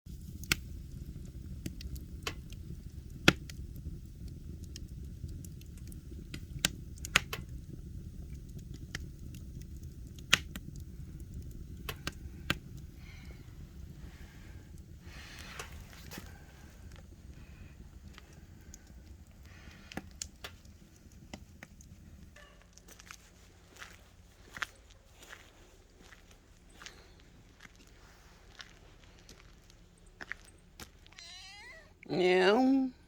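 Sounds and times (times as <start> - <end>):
fire low roar: 0.1 - 24.6
fire crackles and pops: 0.1 - 31.7.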